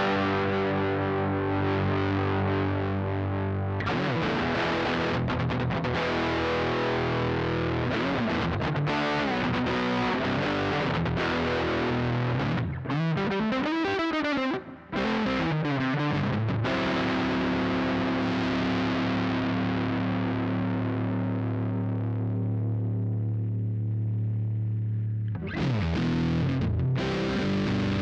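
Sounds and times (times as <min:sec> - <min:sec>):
electric guitar playing: 0:00.0 - 0:28.0.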